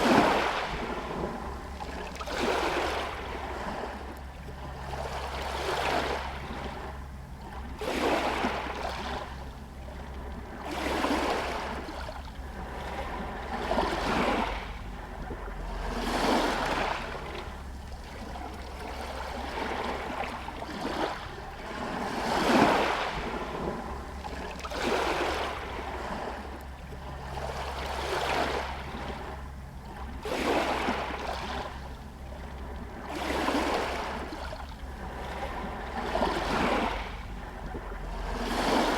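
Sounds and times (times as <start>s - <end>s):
waves lapping against stones: 0.0s - 38.9s
steady low rumble: 8.5s - 38.9s.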